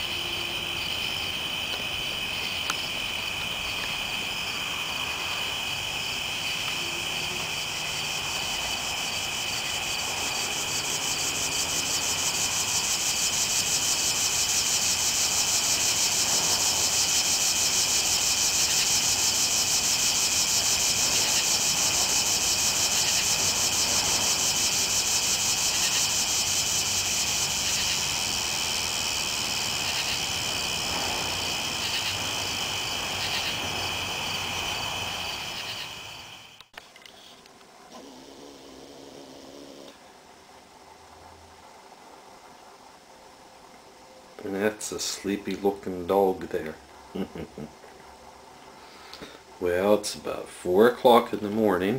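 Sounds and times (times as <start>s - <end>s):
insect high trill: 0.0s - 37.4s
insect pulsing buzz: 0.0s - 40.1s.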